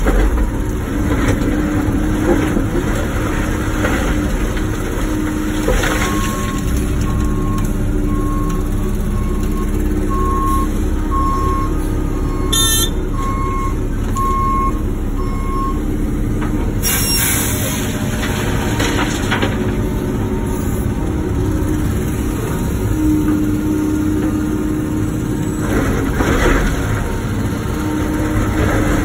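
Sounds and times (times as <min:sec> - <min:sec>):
excavator diesel engine running: 0:00.0 - 0:29.0
reversing alarm beeping: 0:06.0 - 0:15.9.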